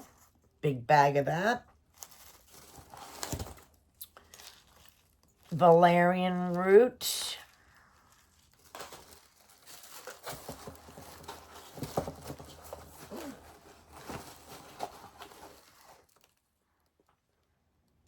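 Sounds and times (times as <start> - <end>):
packaging rustling and crinkling: 1.7 - 5.8, 7.4 - 16.6.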